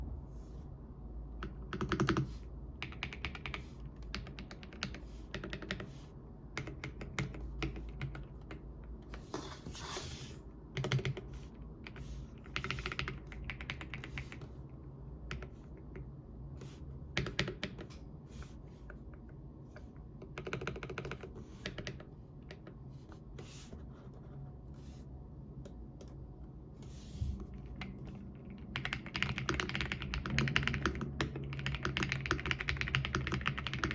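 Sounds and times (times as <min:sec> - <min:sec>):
mechanical keyboard typing: 0:01.4 - 0:05.9, 0:06.5 - 0:08.6, 0:10.7 - 0:14.5, 0:15.3 - 0:16.0, 0:17.1 - 0:18.0, 0:20.2 - 0:22.7, 0:27.7 - 0:33.9.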